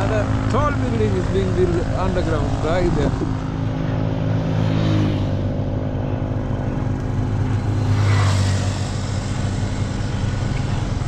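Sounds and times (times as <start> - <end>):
vehicle engine running: 0.0 - 11.0
rushing swell: 7.6 - 11.0.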